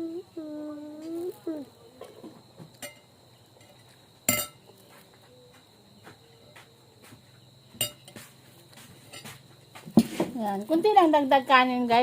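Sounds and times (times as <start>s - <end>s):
utensil clinking against a dish: 2.8s - 4.7s, 7.8s - 10.2s.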